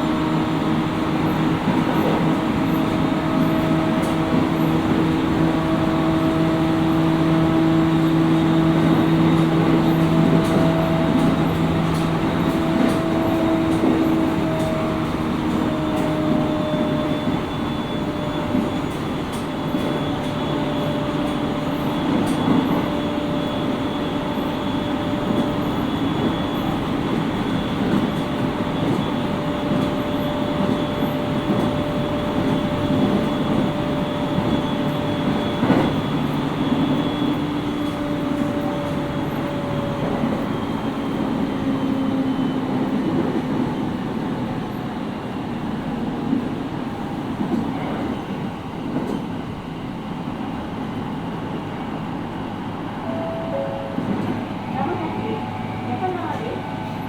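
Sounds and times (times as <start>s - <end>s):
train wheels rumbling on rails: 0.0s - 57.0s.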